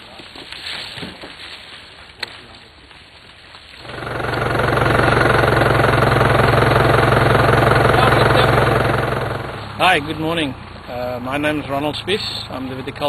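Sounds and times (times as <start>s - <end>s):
engine running: 3.8s - 13.0s.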